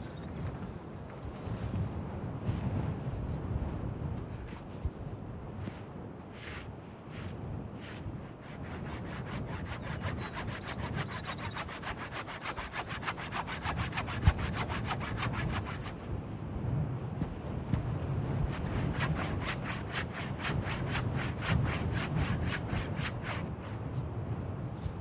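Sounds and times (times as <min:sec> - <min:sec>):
hand saw cutting wood: 0:07.2 - 0:16.0, 0:18.5 - 0:23.8.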